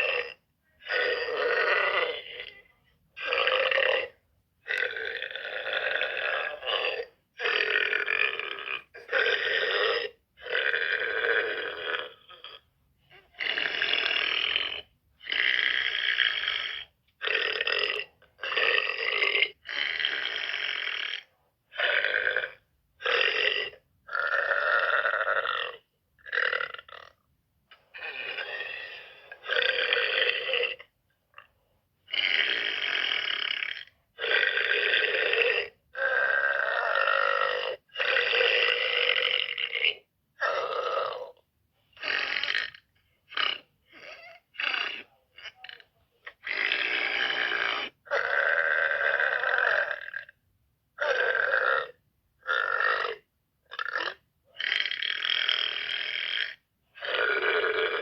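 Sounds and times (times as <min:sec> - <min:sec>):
girl burping: 0:27.9 - 0:30.9, 0:42.0 - 0:45.8.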